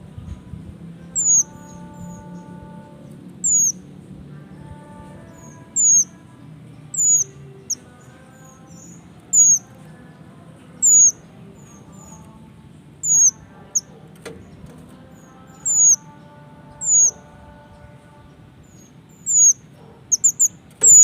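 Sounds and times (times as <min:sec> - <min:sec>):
bird whistle call: 0:03.4 - 0:03.8, 0:19.3 - 0:21.0.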